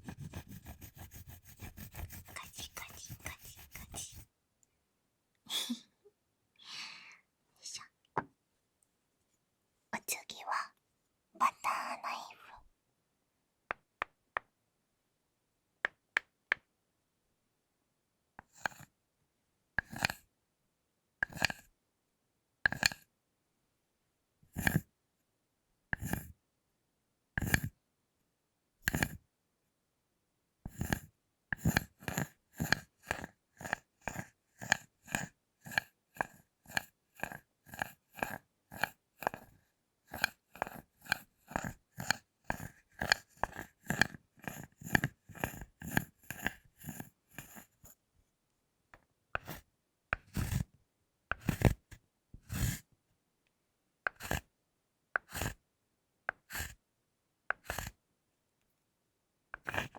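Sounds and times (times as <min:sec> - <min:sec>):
knife scraping chocolate bar: 0:00.0 - 0:04.2, 0:18.4 - 0:18.9, 0:19.8 - 0:20.2, 0:21.2 - 0:21.6, 0:28.8 - 0:29.2, 0:30.7 - 0:31.0, 0:31.6 - 0:47.9, 0:49.4 - 0:49.6, 0:50.2 - 0:50.7, 0:51.3 - 0:52.8, 0:54.1 - 0:54.5, 0:55.2 - 0:55.6, 0:56.4 - 0:56.8, 0:57.5 - 0:57.9, 0:59.6 - 0:59.9.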